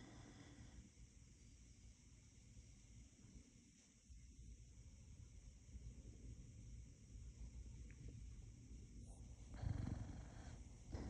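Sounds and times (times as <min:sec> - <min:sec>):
dog snoring faintly: 0:00.0 - 0:01.0, 0:09.0 - 0:11.0.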